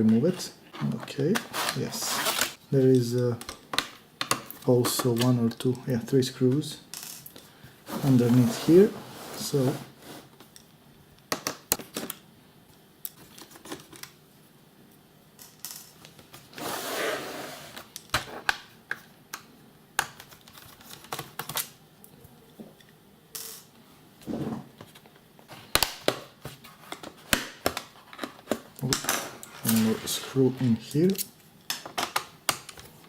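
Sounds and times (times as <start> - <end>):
scraping rustle: 7.8 - 10.3.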